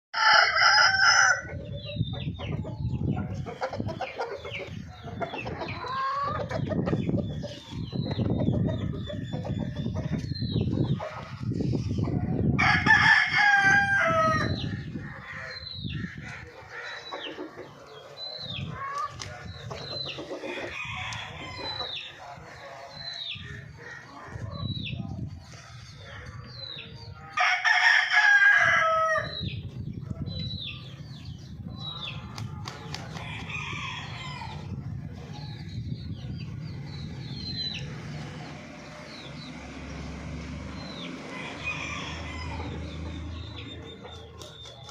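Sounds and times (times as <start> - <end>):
rooster crowing: 0.2 - 1.5, 12.6 - 14.6, 27.4 - 29.3, 41.3 - 42.8
chicken clucks and chirps: 0.2 - 39.7, 40.8 - 44.9.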